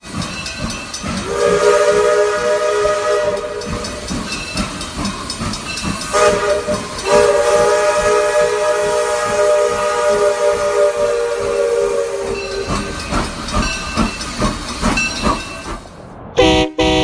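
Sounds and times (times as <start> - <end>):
railroad air horn blasts: 1.2 - 3.8, 6.1 - 12.4, 16.4 - 17.0.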